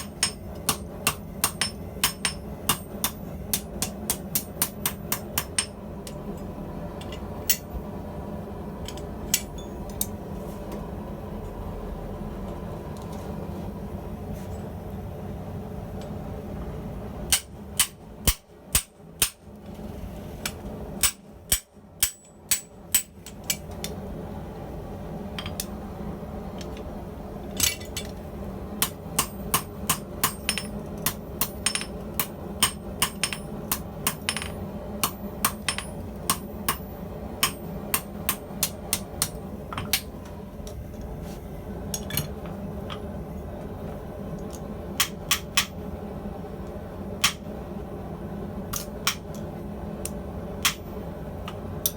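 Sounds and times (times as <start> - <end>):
hammer striking steel on anvil: 0.0 - 6.2, 7.0 - 7.8, 17.3 - 19.4, 20.5 - 23.7, 28.8 - 40.1
steady low hum: 0.0 - 51.9.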